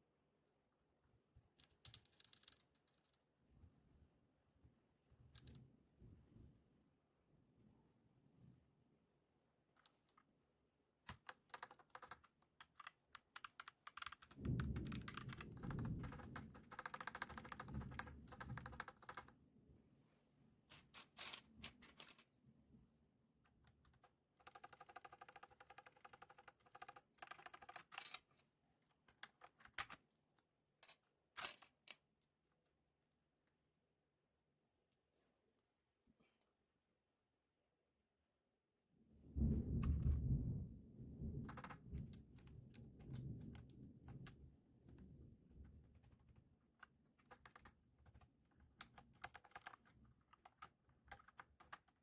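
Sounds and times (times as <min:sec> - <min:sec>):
mechanical keyboard typing: 0:01.7 - 0:03.1, 0:11.1 - 0:19.3, 0:23.7 - 0:28.3, 0:29.1 - 0:30.0, 0:41.5 - 0:44.4, 0:45.9 - 0:52.0.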